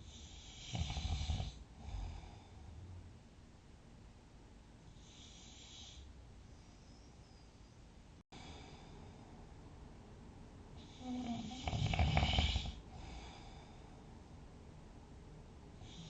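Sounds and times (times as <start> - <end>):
person snoring: 0.0 - 2.5, 10.8 - 13.6
quiet breathing: 0.0 - 3.1, 4.8 - 7.5, 8.3 - 9.6, 10.7 - 14.6, 15.7 - 16.0.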